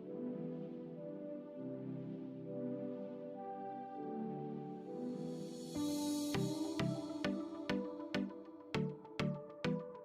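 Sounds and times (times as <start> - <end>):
electronic music chords: 4.1 - 10.0.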